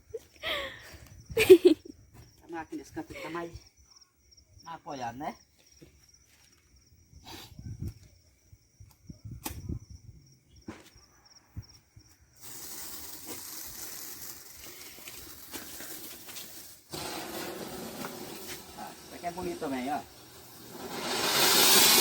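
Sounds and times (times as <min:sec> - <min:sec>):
crickets chirping: 0:00.0 - 0:22.0
sharp pops: 0:09.4 - 0:09.7, 0:16.9 - 0:22.0
firework hissing: 0:12.4 - 0:22.0.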